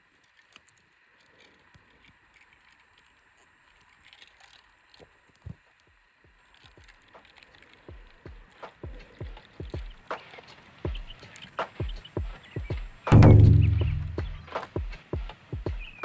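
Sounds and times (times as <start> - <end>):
low knocks: 13.1 - 14.5.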